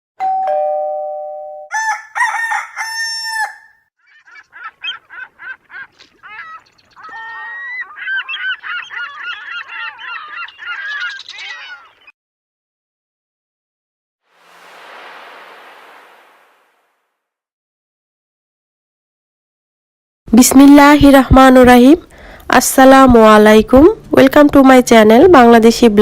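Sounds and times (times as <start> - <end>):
fowl crowing: 1.7 - 5.5
birds honking and cackling: 4.0 - 12.1
short rapid bird calls: 4.0 - 12.1.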